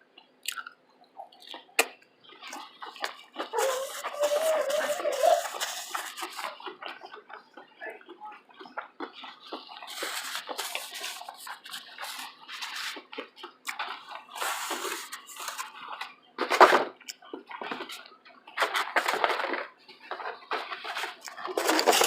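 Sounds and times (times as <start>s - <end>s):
person chewing with wet mouth sounds: 0.2s - 16.3s.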